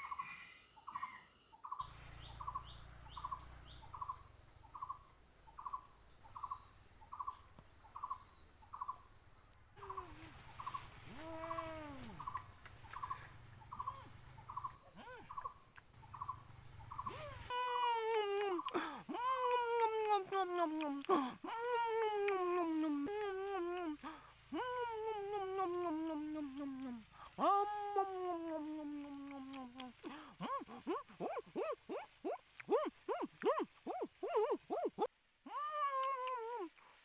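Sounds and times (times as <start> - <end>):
high-pitched insect drone: 0.0 - 19.6.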